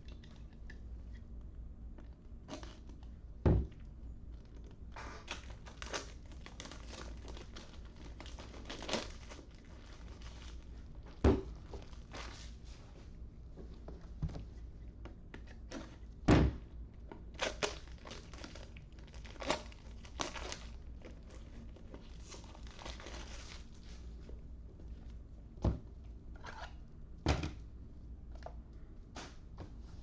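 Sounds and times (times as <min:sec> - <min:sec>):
crinkling and rustling: 0:02.0 - 0:16.2, 0:16.9 - 0:25.3.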